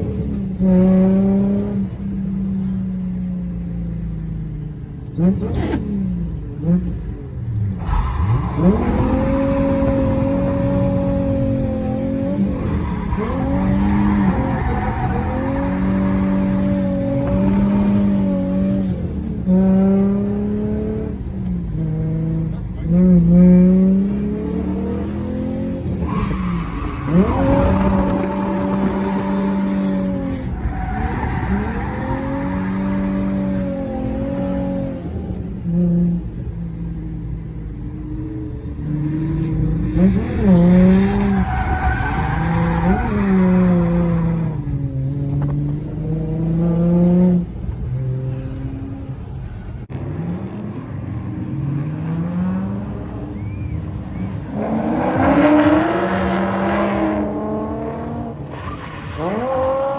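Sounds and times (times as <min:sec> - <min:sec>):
car engine revving: 0:00.0 - 0:59.9
tyres squealing: 0:07.8 - 0:18.6, 0:25.8 - 0:34.4, 0:40.2 - 0:44.6.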